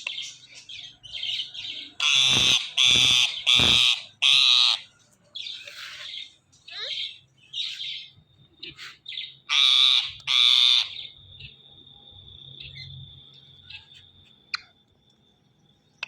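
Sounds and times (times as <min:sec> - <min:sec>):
parakeet screeching: 0:02.0 - 0:04.8, 0:09.5 - 0:11.0.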